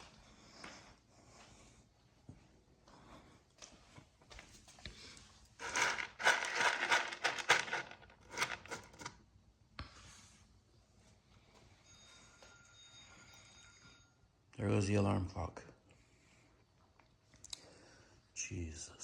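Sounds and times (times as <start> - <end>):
plastic bag crinkling: 5.6 - 9.0.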